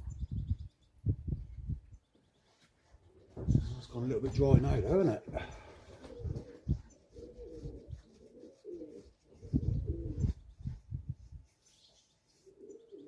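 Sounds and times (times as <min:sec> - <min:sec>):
pigeons cooing: 0:03.1 - 0:10.8, 0:11.7 - 0:13.0.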